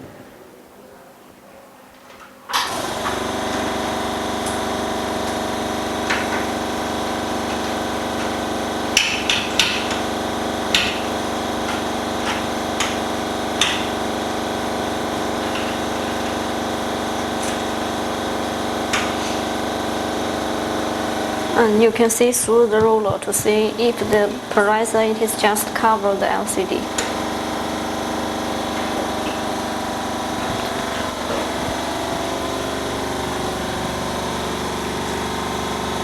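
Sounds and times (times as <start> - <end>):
machine motor humming: 2.5 - 36.0
clicks and taps of parts: 13.6 - 13.9.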